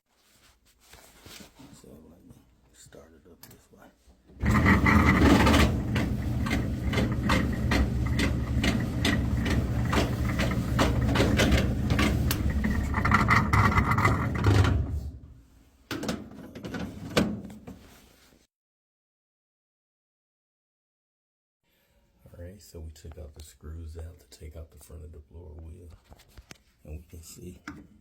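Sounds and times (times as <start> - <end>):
clothes dryer humming: 4.3 - 15.4.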